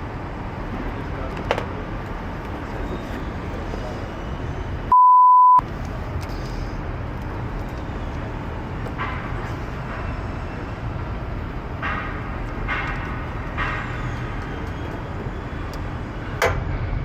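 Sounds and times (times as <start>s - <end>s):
censor bleep: 4.9s - 5.6s
steady rushing background noise: 5.6s - 17.0s.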